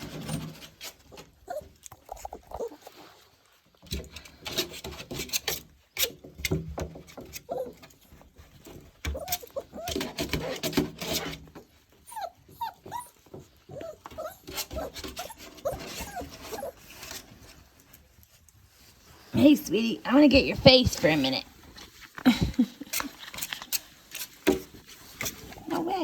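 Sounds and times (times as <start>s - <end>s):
puppies whimpering and yipping: 1.1s - 3.1s, 7.4s - 8.2s, 9.1s - 10.8s, 11.7s - 17.1s.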